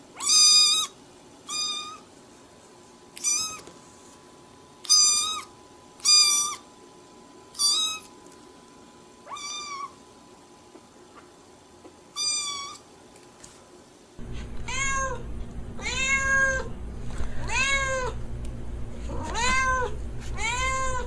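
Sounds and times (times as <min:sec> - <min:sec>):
cat meowing: 0:01.5 - 0:02.0, 0:03.2 - 0:03.6, 0:04.8 - 0:06.6, 0:07.6 - 0:08.1, 0:09.2 - 0:10.0, 0:12.2 - 0:12.8, 0:14.6 - 0:15.2, 0:15.8 - 0:16.7, 0:17.5 - 0:18.2, 0:19.1 - 0:21.0.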